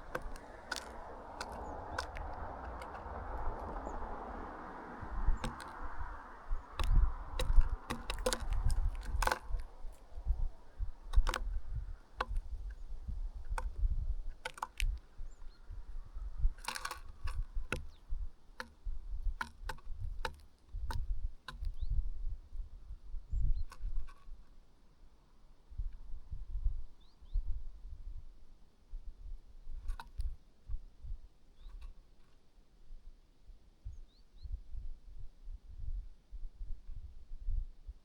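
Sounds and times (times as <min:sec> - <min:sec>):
rustling: 0:00.0 - 0:04.2
birds pecking at food: 0:00.0 - 0:21.9
wind rumble on microphone: 0:00.0 - 0:32.0, 0:32.8 - 0:38.0.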